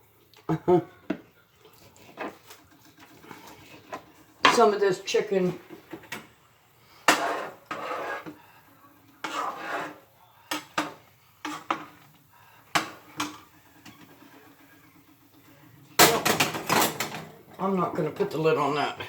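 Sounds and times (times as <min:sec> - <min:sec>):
utensils and dishes clinking: 0:16.0 - 0:17.6.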